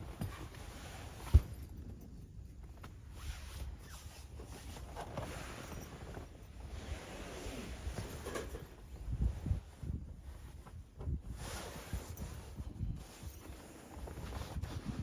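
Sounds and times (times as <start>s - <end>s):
handling rustling: 0.0s - 15.0s
wind rumble on microphone: 0.0s - 15.0s
zip-like scrape: 3.1s - 8.6s, 11.3s - 15.0s.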